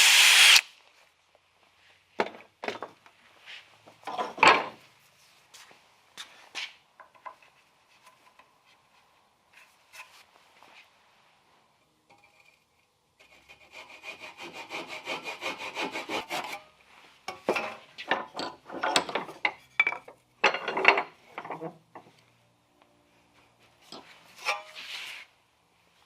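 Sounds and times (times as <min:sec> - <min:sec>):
hand saw cutting wood: 0:13.2 - 0:16.7.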